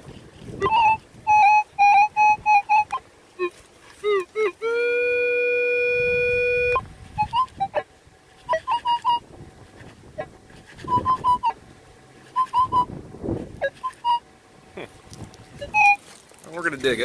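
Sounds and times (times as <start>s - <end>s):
metal detector steady tone: 0.6s - 9.3s, 10.2s - 11.6s, 12.2s - 14.3s, 15.5s - 16.2s
metal detector short high beeps: 13.6s - 14.2s, 15.6s - 16.0s.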